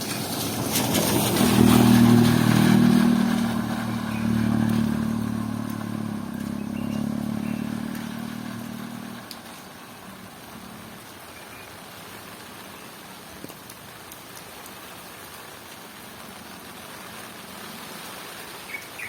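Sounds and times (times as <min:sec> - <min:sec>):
motorcycle passing by: 0:00.0 - 0:11.0.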